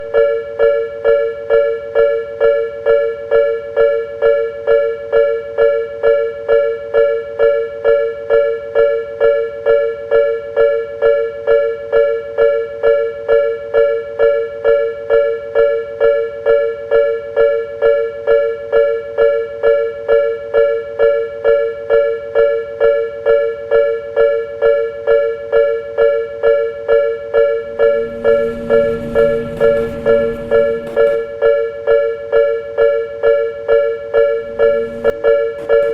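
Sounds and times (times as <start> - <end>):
low steady tone: 27.5 - 31.6, 34.2 - 35.9.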